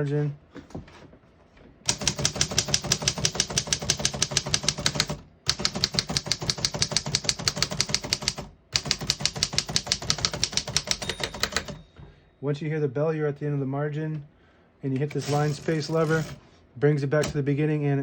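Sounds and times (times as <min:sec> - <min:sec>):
typewriter keys striking: 0:01.9 - 0:11.9, 0:15.1 - 0:16.4.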